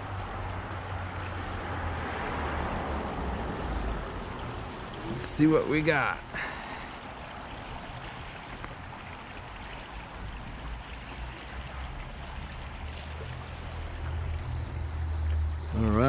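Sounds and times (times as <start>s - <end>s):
stream water rushing: 0.0s - 16.0s.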